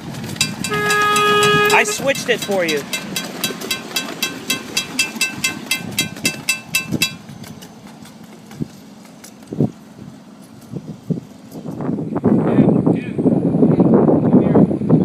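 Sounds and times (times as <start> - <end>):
train bell ringing rapidly: 0.4 - 7.2.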